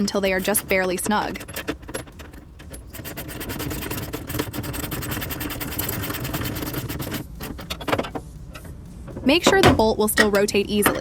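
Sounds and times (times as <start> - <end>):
socket ratchet clicking: 0.0 - 8.2.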